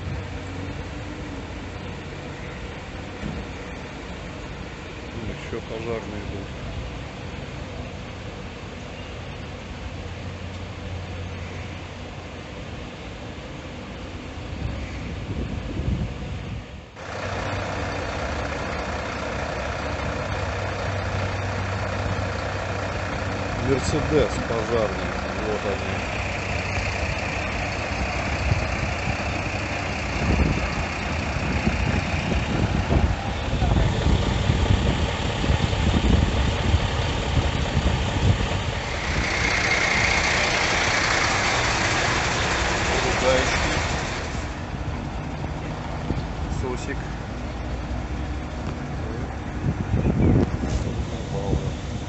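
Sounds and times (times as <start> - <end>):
steady rushing noise: 11.9 - 52.0
truck engine idling: 16.8 - 52.0.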